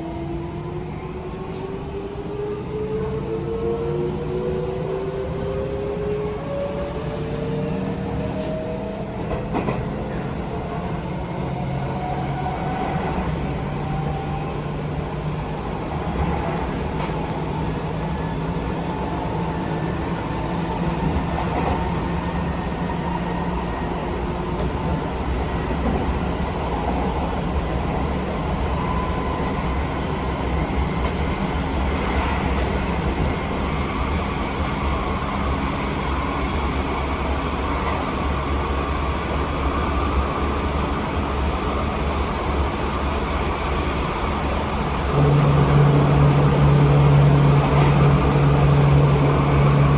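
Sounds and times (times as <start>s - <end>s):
train wheels rumbling on rail: 0.0s - 49.9s.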